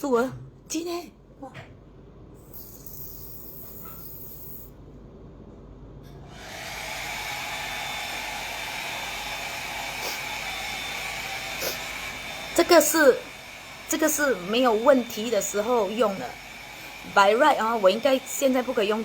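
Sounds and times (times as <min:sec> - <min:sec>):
nasal spray hissing: 0:11.6 - 0:11.9.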